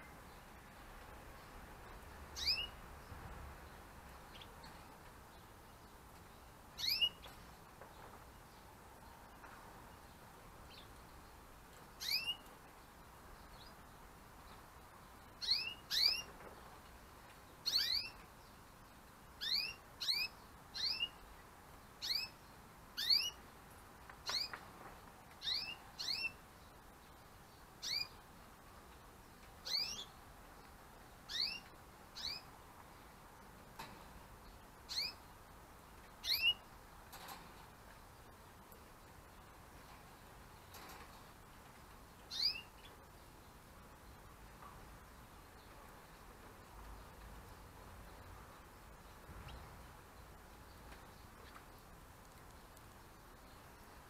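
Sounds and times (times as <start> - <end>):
canaries chirping: 2.3 - 8.2, 10.2 - 12.6, 13.4 - 16.8, 17.6 - 18.3, 19.4 - 21.3, 22.0 - 23.4, 24.2 - 24.6, 25.3 - 26.4, 27.6 - 28.2, 29.6 - 32.5, 33.8 - 37.4, 42.2 - 44.3, 47.8 - 54.0.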